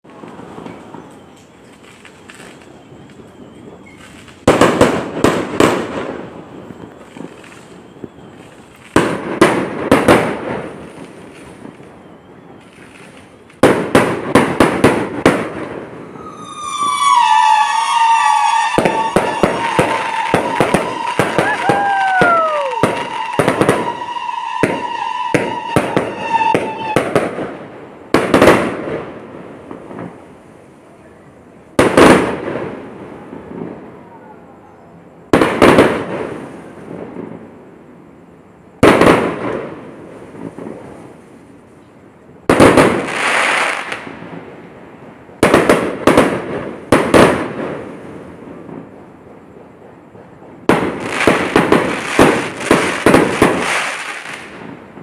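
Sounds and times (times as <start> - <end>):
fireworks bangs and booms: 0.0 - 55.0
steady high tone: 16.0 - 26.4.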